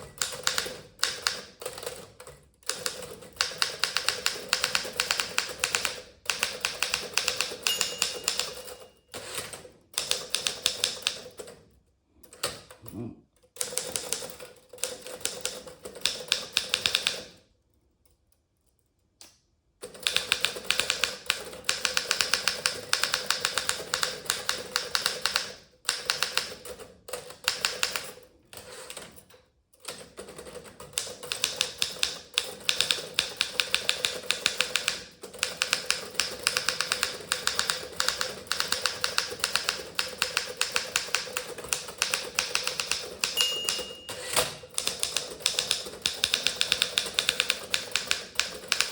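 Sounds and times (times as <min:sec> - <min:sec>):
typewriter typing: 0:00.0 - 0:11.6, 0:13.6 - 0:17.4, 0:19.8 - 0:48.9
typewriter bell ring: 0:07.3 - 0:09.5, 0:43.2 - 0:45.0.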